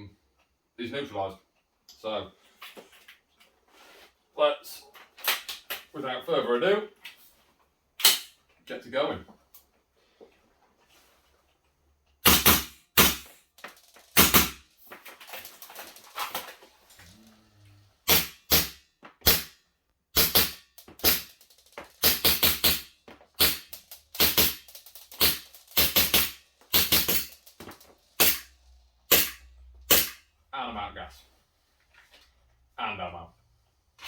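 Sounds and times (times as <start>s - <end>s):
airsoft gun shots: 12.2s - 13.3s, 14.2s - 14.6s, 18.1s - 19.6s, 20.2s - 21.3s, 29.1s - 30.2s
handling clatter: 13.6s - 17.2s.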